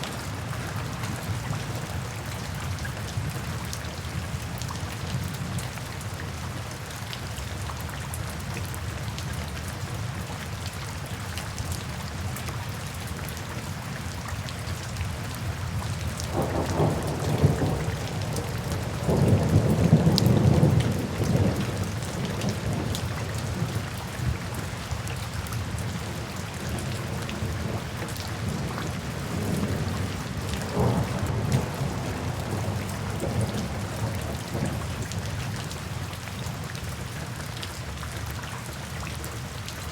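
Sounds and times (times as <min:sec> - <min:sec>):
steady rainfall: 0:00.0 - 0:39.9
thunder rumbling: 0:16.3 - 0:23.7, 0:27.4 - 0:35.2.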